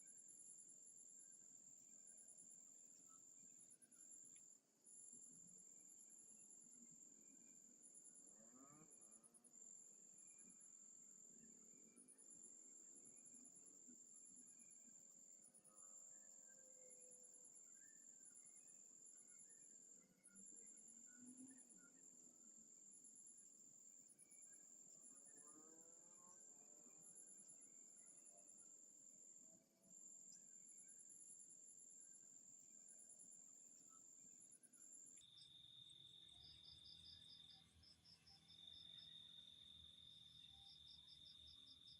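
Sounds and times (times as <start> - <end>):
lower cricket trill: 0.0 - 41.9
high-pitched cricket trill: 11.4 - 41.9
quick pulsed cricket chirps: 15.4 - 41.9.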